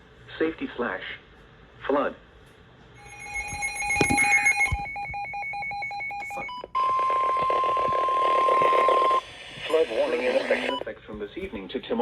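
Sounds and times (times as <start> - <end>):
warbling electronic beeping: 3.0 - 6.5
steady single alarm tone: 3.0 - 10.8
radio static: 7.4 - 10.8.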